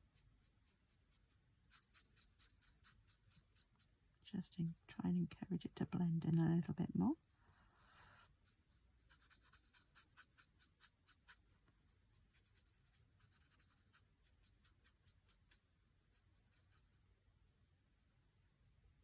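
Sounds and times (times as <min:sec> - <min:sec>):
tool scratching on card: 0:01.7 - 0:03.9, 0:08.2 - 0:11.6.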